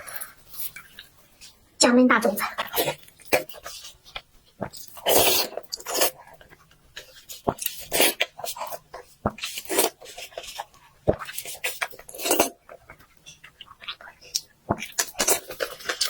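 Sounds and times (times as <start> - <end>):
slurping: 2.5 - 13.0
person chewing wetly: 2.6 - 16.0.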